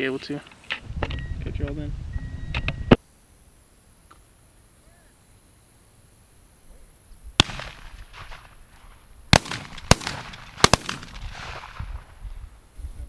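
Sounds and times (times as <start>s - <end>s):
shotgun shots with echo: 7.4s - 8.6s, 9.3s - 12.0s.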